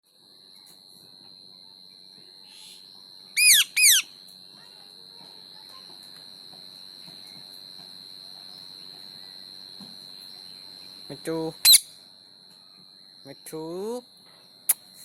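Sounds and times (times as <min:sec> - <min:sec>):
parrot whistling calls: 0:03.4 - 0:04.1, 0:11.6 - 0:11.9.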